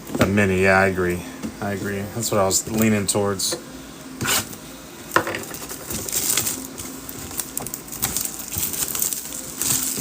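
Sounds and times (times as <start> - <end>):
packaging wrap crinkling: 5.4 - 10.0.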